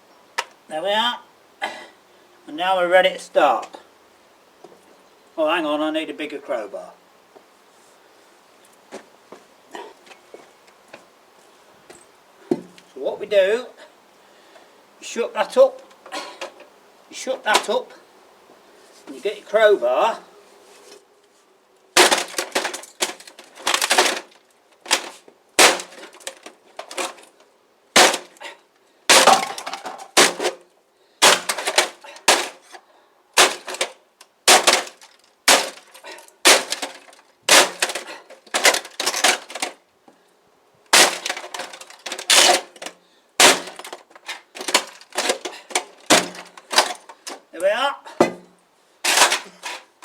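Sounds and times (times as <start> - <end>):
crowbar smashing printer: 22.0 - 27.3, 28.0 - 28.4, 29.1 - 30.6, 31.2 - 32.7, 33.4 - 39.8, 40.9 - 47.4, 49.0 - 49.9.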